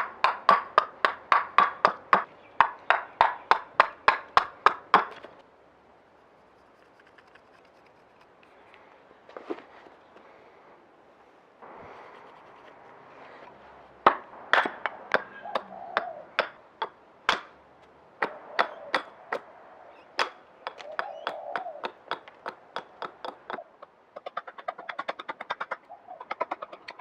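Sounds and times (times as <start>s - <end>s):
axe chopping wood: 0.0s - 5.4s, 14.0s - 17.6s, 18.2s - 19.4s, 20.2s - 23.6s.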